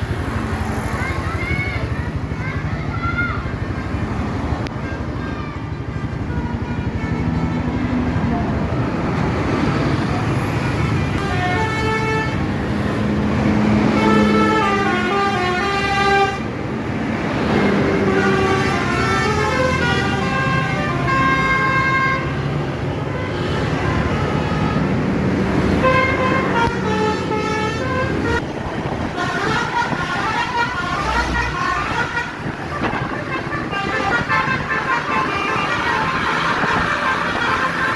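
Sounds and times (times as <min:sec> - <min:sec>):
engine and traffic rumble: 0:00.0 - 0:37.9
musical bus horn tune: 0:11.0 - 0:12.6, 0:13.8 - 0:16.6, 0:17.8 - 0:25.2, 0:25.8 - 0:37.9.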